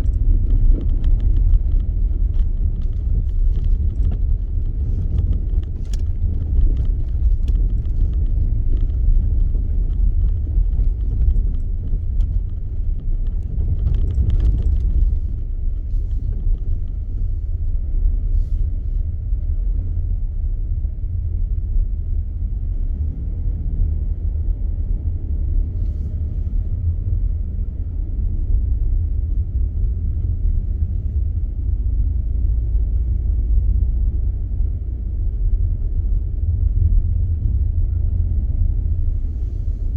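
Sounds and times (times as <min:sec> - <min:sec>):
car tyres and engine rumble: 0:00.0 - 0:39.9.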